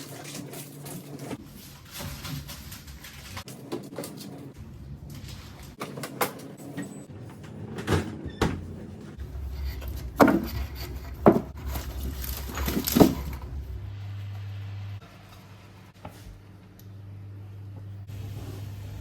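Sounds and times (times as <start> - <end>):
low steady hum: 8.4 - 19.0.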